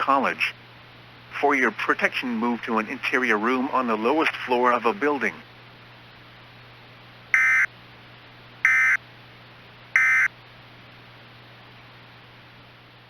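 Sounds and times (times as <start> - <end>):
buzzy digital chirps: 7.4 - 7.7, 8.7 - 9.0, 10.0 - 10.3.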